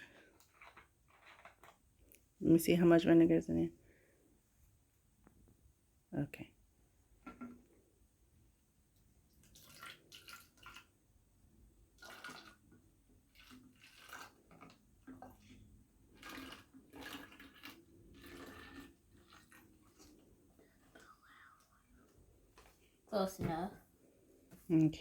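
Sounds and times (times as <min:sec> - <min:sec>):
liquid pouring into a bottle: 0:00.0 - 0:02.2, 0:09.3 - 0:11.0, 0:11.9 - 0:22.0.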